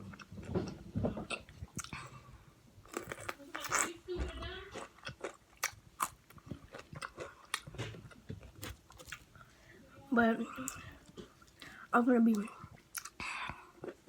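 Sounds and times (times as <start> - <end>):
chewing crispy fried chicken: 4.6 - 9.4.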